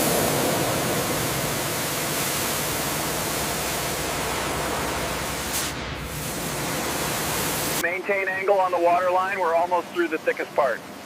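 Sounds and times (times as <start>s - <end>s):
high-pressure water jet spraying: 0.0s - 7.8s.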